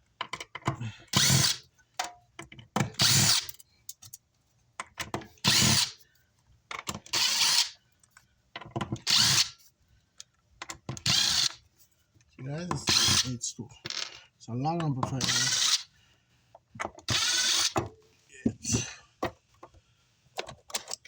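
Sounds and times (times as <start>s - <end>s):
power screwdriver whirring: 1.2s - 1.6s, 3.0s - 3.5s, 5.4s - 6.0s, 7.1s - 7.7s, 9.0s - 9.6s, 11.0s - 11.6s, 12.8s - 13.3s, 15.2s - 15.8s, 17.1s - 17.8s.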